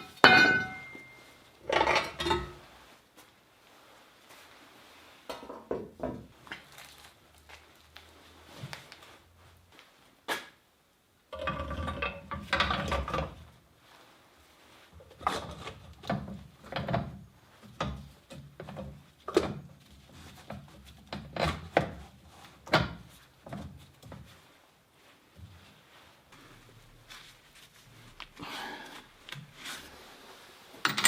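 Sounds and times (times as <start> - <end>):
tools and parts being handled: 0.0 - 2.8, 30.7 - 31.0.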